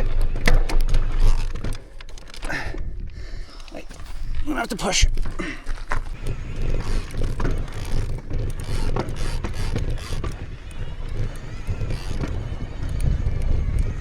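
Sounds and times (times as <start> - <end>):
bike clicks and scuffs: 0.0 - 14.0
wind buffeting microphone: 6.0 - 14.0.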